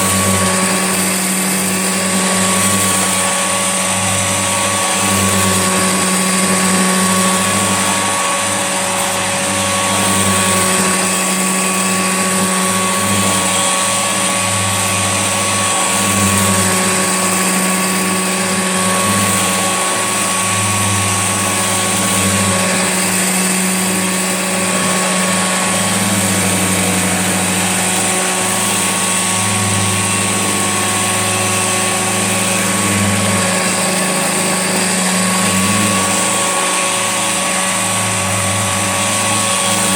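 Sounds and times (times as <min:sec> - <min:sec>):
upright vacuum cleaner running: 0:00.0 - 0:39.9.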